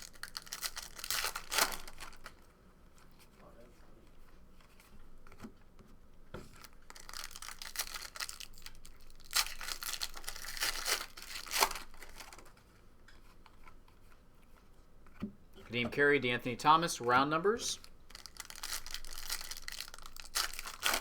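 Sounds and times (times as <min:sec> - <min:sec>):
wrapper tearing and crinkling: 0:00.0 - 0:02.4, 0:06.6 - 0:12.5, 0:17.8 - 0:21.0.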